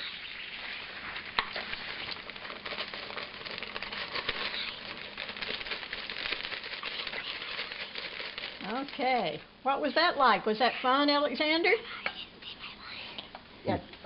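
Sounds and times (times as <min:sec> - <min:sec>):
butter sizzling in a pan: 0:00.0 - 0:11.4.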